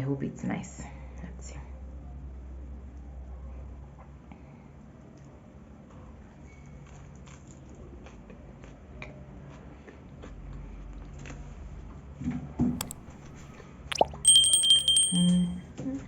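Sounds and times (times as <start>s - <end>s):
mouth clicks: 12.8s - 15.4s.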